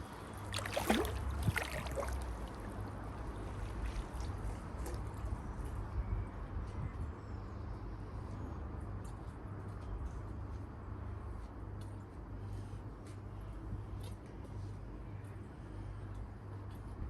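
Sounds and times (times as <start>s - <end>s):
water splashes: 0.0s - 4.3s
water trickling and gurgling: 0.0s - 5.2s.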